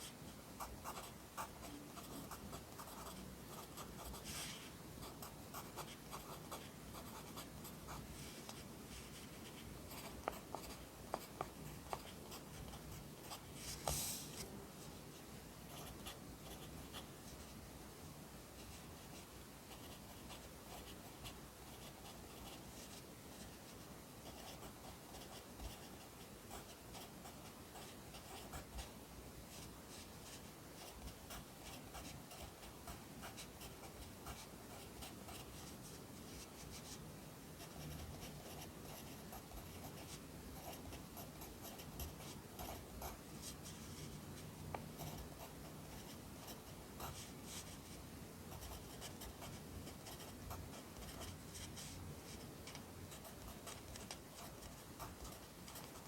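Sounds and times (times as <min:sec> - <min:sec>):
pencil scratching on paper: 0:00.8 - 0:08.0, 0:37.6 - 0:44.2, 0:45.0 - 0:56.0.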